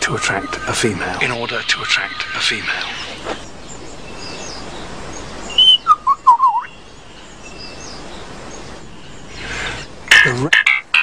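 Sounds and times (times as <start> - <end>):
background hiss: 0.0 - 11.0
lyrebird calling: 0.0 - 11.0.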